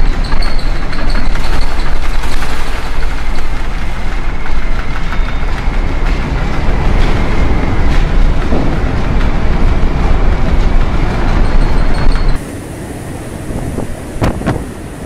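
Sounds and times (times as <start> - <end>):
storm wind: 0.0 - 15.0.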